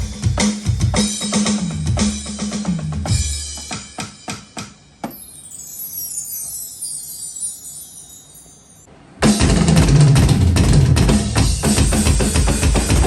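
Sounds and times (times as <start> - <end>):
shimmering chime-like sample: 5.0 - 8.9
electronic drum hits: 9.2 - 13.0.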